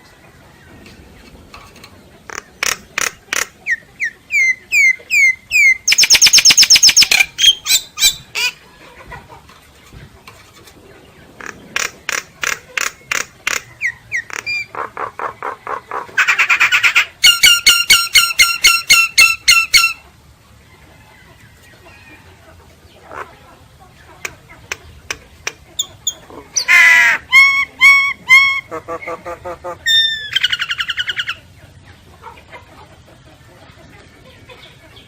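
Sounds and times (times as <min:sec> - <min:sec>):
starling singing: 0:00.8 - 0:08.6, 0:24.3 - 0:29.2.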